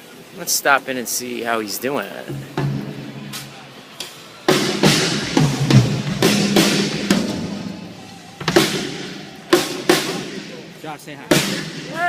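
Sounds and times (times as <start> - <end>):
drum kit hits ringing out: 2.3 - 3.5, 4.5 - 12.0.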